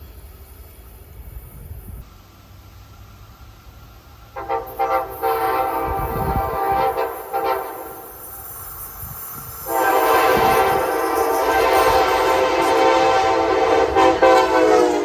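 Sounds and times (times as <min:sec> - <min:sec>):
train air horn blasts: 0:04.4 - 0:08.5, 0:09.4 - 0:15.0.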